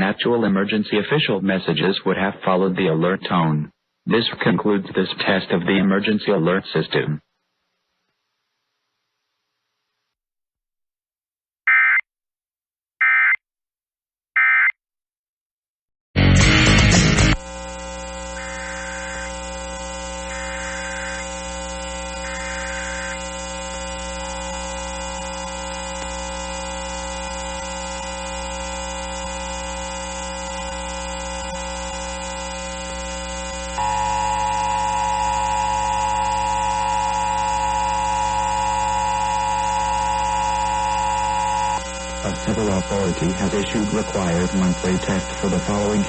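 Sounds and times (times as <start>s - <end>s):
header data bursts: 17.2s - 32.8s, 33.4s - 46.0s
steady hum: 17.3s - 46.0s
two-tone attention signal: 22.1s - 23.3s, 33.8s - 41.8s
faint steady tone: 33.8s - 41.9s.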